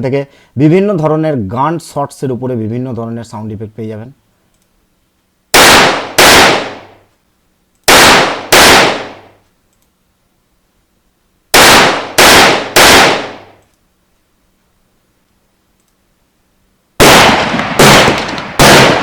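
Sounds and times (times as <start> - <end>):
gunshots with ringing tail: 5.6 - 7.0, 7.9 - 9.3, 11.6 - 13.6, 17.0 - 19.0.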